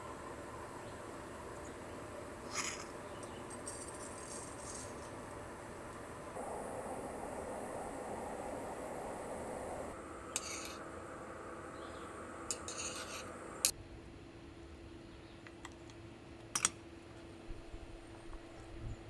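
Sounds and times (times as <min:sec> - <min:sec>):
faint steady hum: 0:00.0 - 0:13.7
camp utensils scraping and clinking: 0:02.5 - 0:05.2, 0:12.5 - 0:13.4.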